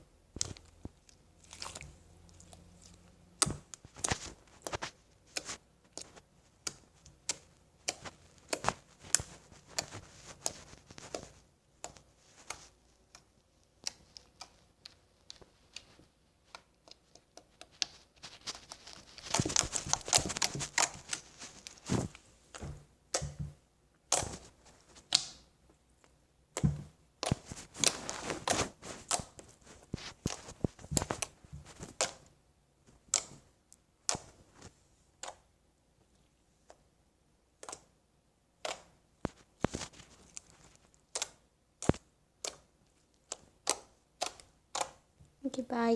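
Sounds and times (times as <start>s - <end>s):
slime squished by hand: 0.4s - 23.4s.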